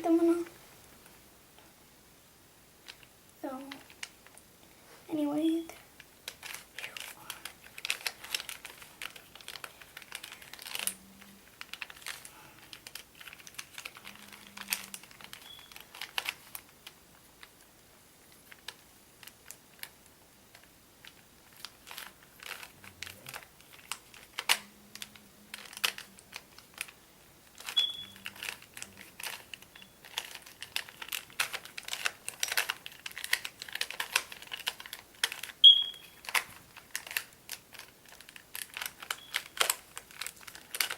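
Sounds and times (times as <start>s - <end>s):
puzzle cube clicking: 27.6s - 40.9s.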